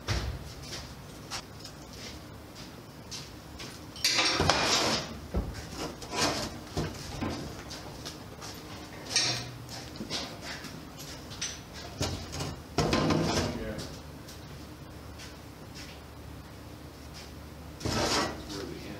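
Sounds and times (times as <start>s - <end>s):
metal rattling scrape: 4.1s - 6.6s, 17.8s - 18.6s.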